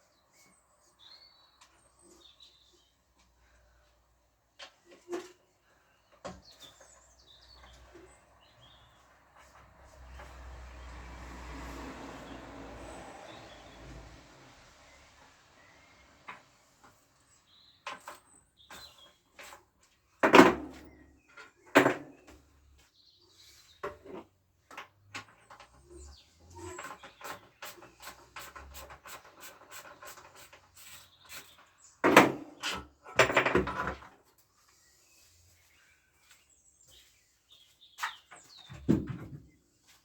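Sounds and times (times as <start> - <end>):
knocks and clatters of tools and parts: 17.8 - 22.6, 23.8 - 30.7, 31.4 - 34.4, 38.0 - 39.6.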